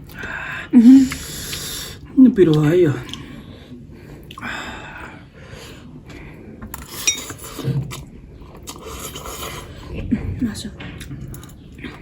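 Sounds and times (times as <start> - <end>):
noisy mouth eating sound: 6.7 - 12.0
tableware clinking: 6.8 - 7.4.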